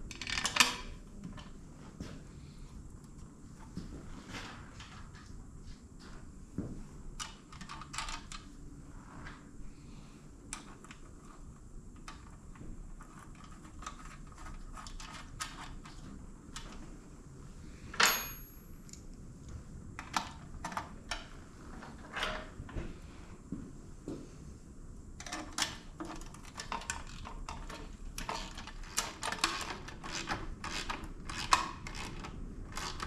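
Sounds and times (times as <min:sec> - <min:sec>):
loud metallic clink: 0:18.0 - 0:18.8
hand tools clicking and clinking: 0:18.0 - 0:19.0.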